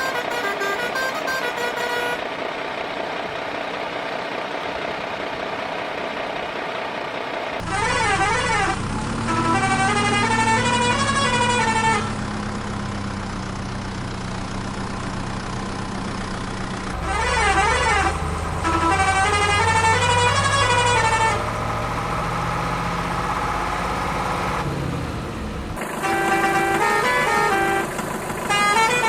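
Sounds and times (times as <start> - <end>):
musical horn tune: 0.0 - 2.2, 16.9 - 27.8
vehicle engine running: 2.0 - 26.2
siren-like wail: 16.9 - 25.8.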